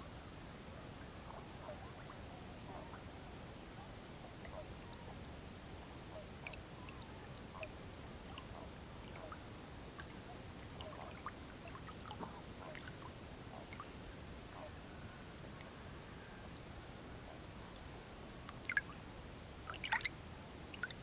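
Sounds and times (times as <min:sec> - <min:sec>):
faint steady hiss: 0:00.0 - 0:21.0
water lapping at shore: 0:04.3 - 0:14.8, 0:19.6 - 0:21.0.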